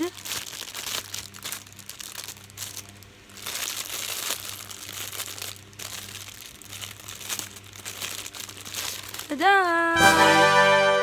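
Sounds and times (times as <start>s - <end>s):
plastic packaging crinkling: 0.0s - 10.0s.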